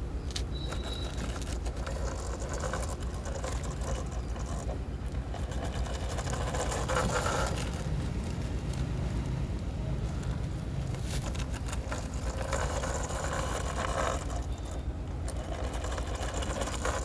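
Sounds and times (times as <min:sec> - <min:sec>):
small motor pulsing: 0:11.4 - 0:17.0.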